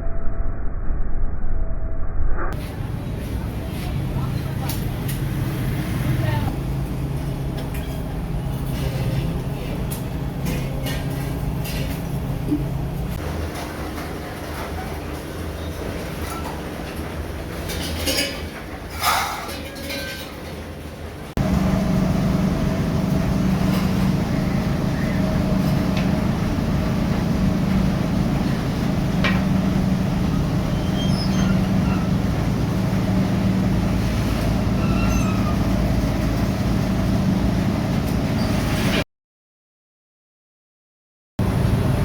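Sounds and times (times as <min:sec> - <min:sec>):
machine hum: 0:21.3 - 0:38.4, 0:41.4 - 0:42.0.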